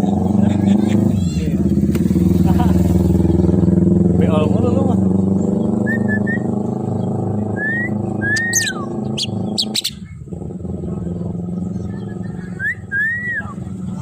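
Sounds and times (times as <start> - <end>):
motorcycle engine running: 0.0 - 14.0
myna whistling and chirping: 5.7 - 10.2, 11.6 - 13.7.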